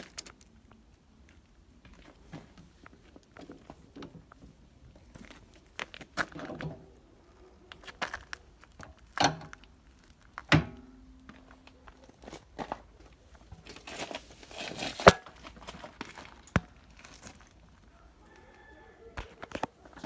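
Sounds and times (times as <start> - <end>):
rustling: 1.8 - 18.5
clicks and knocks: 10.5 - 11.7.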